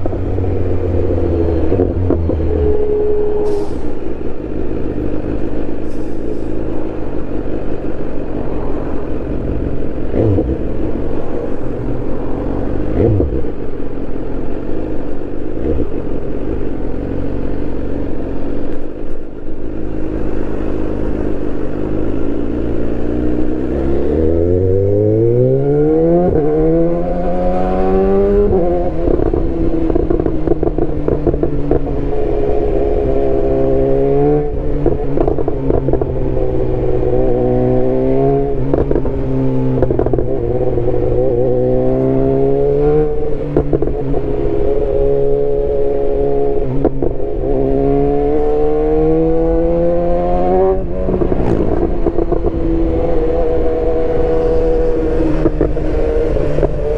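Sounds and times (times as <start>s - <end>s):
motorcycle engine revving: 6.7s - 14.0s, 19.8s - 56.9s.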